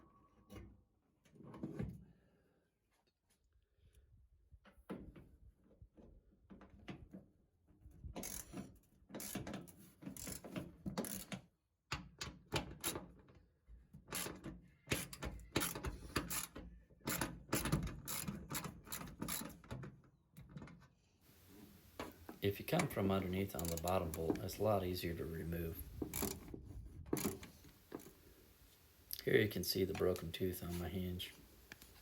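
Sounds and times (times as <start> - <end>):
ratchet wrench clicking: 8.2 - 8.5, 10.2 - 10.4, 23.6 - 23.9, 26.1 - 26.4.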